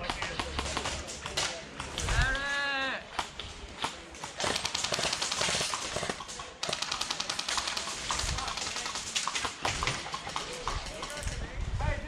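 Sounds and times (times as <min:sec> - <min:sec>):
airsoft guns firing full-auto: 0:04.2 - 0:11.3.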